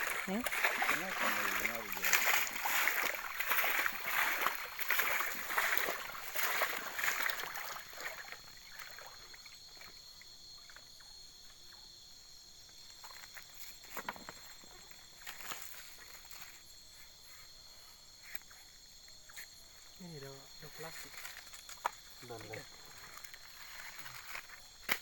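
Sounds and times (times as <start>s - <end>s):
water splashing and swishing: 0.0s - 10.8s, 20.6s - 25.0s
night insects humming: 0.0s - 25.0s.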